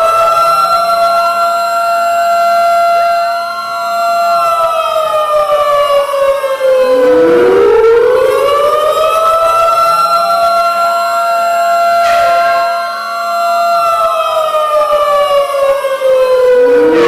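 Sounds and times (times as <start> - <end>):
wailing sirens: 0.0 - 17.0
steady siren tone: 4.7 - 17.0
warning siren pitch sliding: 6.6 - 11.0, 16.2 - 17.0.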